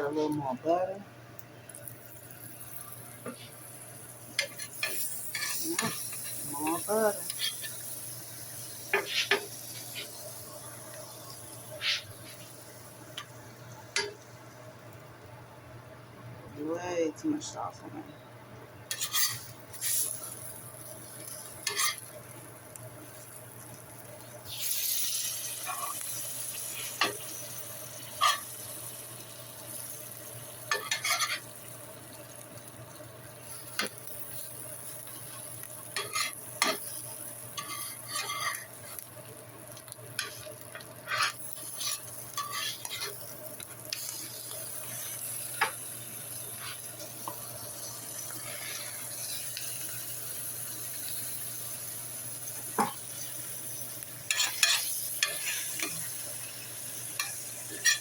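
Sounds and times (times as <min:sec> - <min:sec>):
tacos sizzling on a griddle: 0:00.0 - 0:15.8, 0:18.8 - 0:58.0
utensil scraping and tapping griddle: 0:03.2 - 0:03.6, 0:04.4 - 0:07.8, 0:08.9 - 0:10.2, 0:14.0 - 0:14.2, 0:18.9 - 0:20.4, 0:21.2 - 0:22.1, 0:26.8 - 0:27.2, 0:28.2 - 0:28.4, 0:30.7 - 0:31.5, 0:33.5 - 0:34.4, 0:35.9 - 0:39.1, 0:39.8 - 0:45.8, 0:46.6 - 0:47.4, 0:52.7 - 0:53.0, 0:54.3 - 0:56.1, 0:57.2 - 0:58.0.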